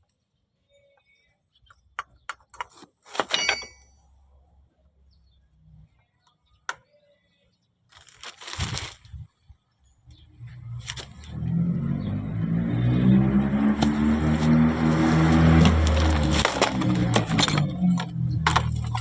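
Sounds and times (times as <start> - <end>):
brief rustle: 7.9 - 9.2
low motor running: 10.4 - 19.0.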